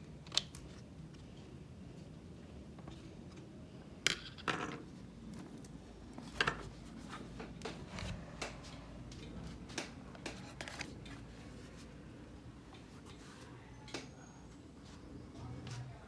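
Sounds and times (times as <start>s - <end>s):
hands clicking and tapping laptop parts: 6.2s - 11.2s.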